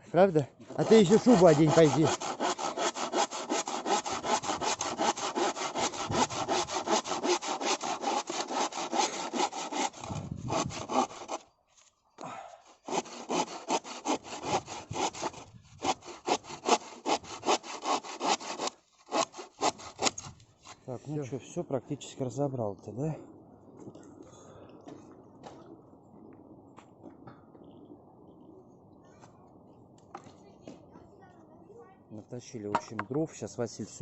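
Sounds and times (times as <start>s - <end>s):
hand saw cutting wood: 0.7s - 11.4s, 12.6s - 20.8s.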